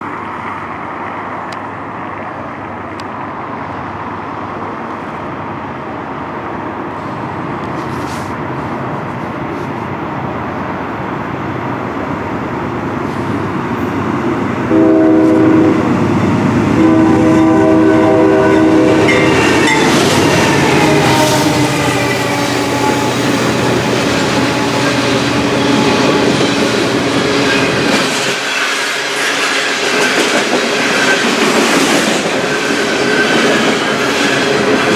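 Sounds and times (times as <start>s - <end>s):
freight train rumble: 0.0s - 34.9s
locomotive air horn blasts: 14.7s - 15.9s, 16.8s - 24.0s
wheels clattering on rails: 21.6s - 34.9s.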